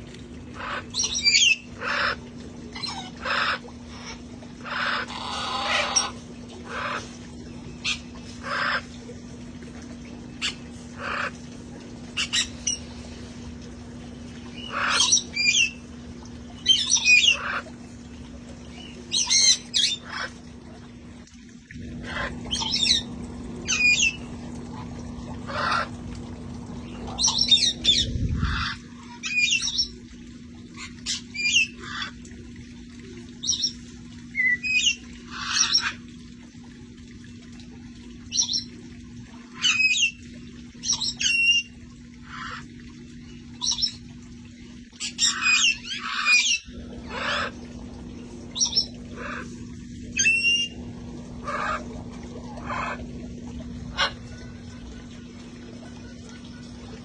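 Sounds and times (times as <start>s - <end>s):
low hum: 0.0s - 29.2s, 41.6s - 57.0s
parrots squawking: 0.6s - 7.0s, 10.4s - 11.3s, 14.6s - 15.8s, 45.0s - 47.6s, 48.6s - 49.5s, 51.4s - 51.8s, 53.9s - 54.2s.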